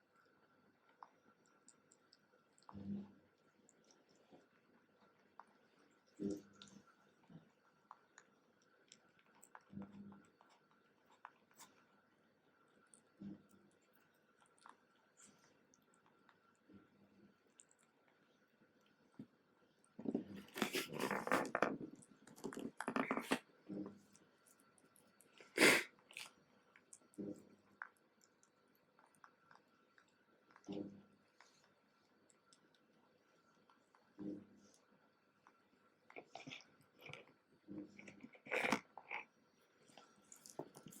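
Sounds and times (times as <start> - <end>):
rabbit eating and crunching: 0.0 - 41.0
rabbit sneezing: 25.5 - 25.9.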